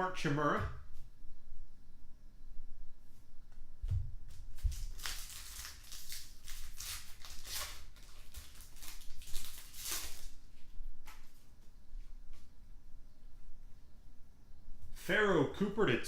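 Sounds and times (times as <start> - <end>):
wrappers crinkling and tearing: 4.3 - 10.5.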